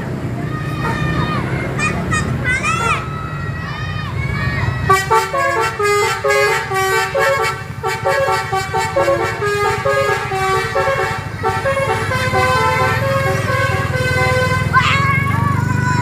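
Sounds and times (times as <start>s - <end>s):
bus engine running: 0.0s - 16.0s
multi-tone air horn melody: 4.9s - 15.2s.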